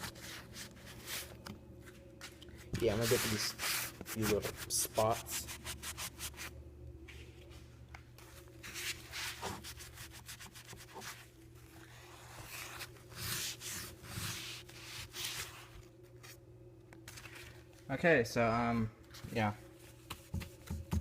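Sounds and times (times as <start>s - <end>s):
paper towel rubbing: 2.7s - 6.5s, 8.6s - 16.4s.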